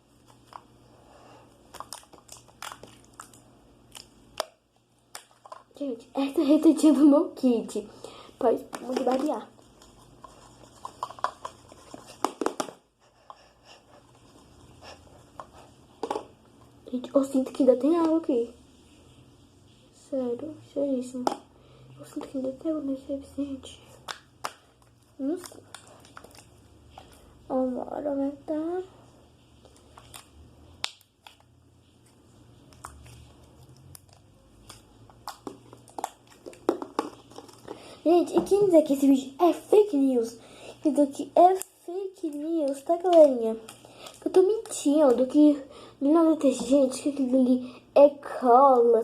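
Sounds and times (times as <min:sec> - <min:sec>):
squishy slime rustles: 0:01.4 - 0:12.4, 0:23.7 - 0:28.6, 0:29.3 - 0:40.3.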